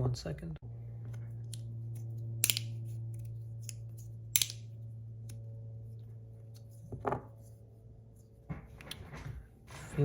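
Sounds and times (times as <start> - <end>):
scissors clicking: 1.4 - 5.4
scissors snipping tape: 1.4 - 5.4.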